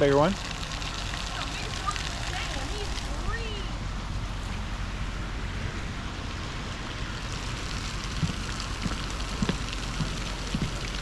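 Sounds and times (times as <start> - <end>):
steady hiss of water: 0.0 - 11.0
soft low thumps: 7.9 - 11.0.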